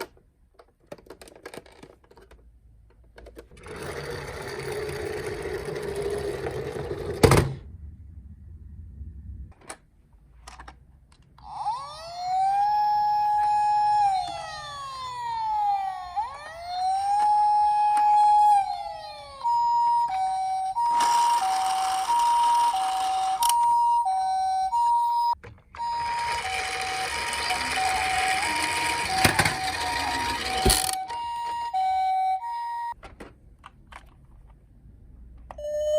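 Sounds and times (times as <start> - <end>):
two-tone hi-lo siren: 11.4 - 33.0
wailing siren: 11.4 - 33.0.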